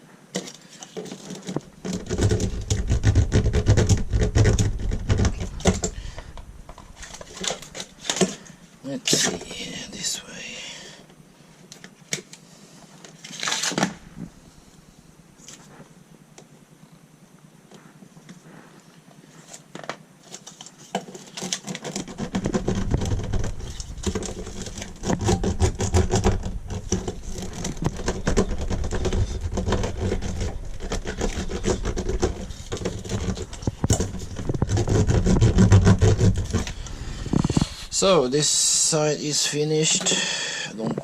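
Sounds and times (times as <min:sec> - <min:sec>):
scraping and crackling of mat: 0:00.5 - 0:08.6, 0:17.8 - 0:38.2
low thuds: 0:02.0 - 0:07.8, 0:22.1 - 0:38.2.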